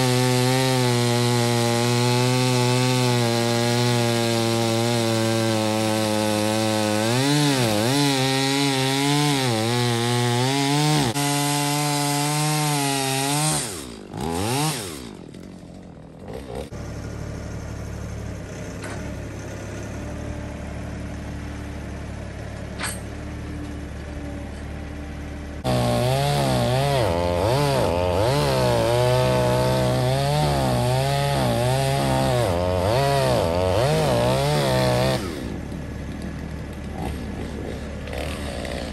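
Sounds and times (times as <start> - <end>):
chainsaw cutting wood: 0.0 - 17.0, 25.2 - 38.9.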